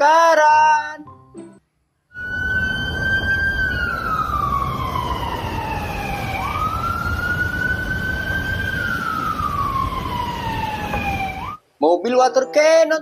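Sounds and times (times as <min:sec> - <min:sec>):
fire truck siren wailing: 0:02.2 - 0:11.6.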